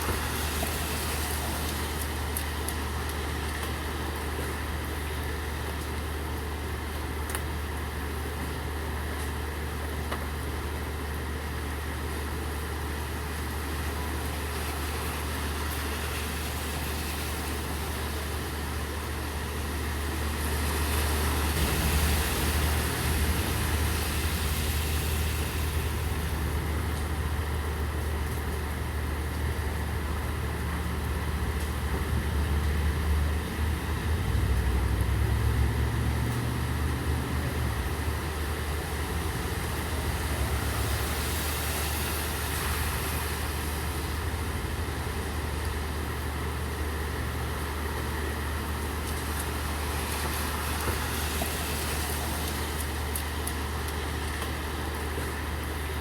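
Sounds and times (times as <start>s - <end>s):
car passing through water: 0.0s - 5.7s, 12.6s - 56.0s
steady rain: 0.0s - 56.0s
vehicle engine idling: 18.2s - 51.1s.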